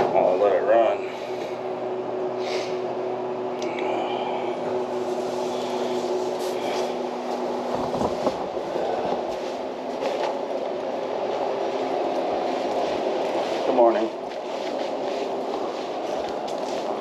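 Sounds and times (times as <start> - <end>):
car engine idling: 3.5 - 13.3.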